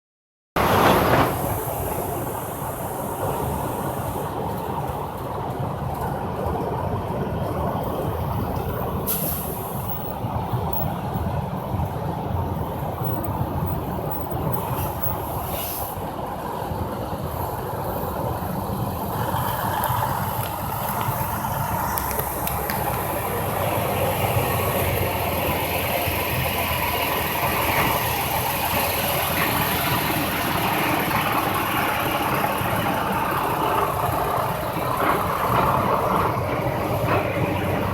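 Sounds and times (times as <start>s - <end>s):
heavy truck traffic rumble: 0.6s - 37.9s
short sharp hisses: 9.0s - 9.9s, 14.7s - 16.0s.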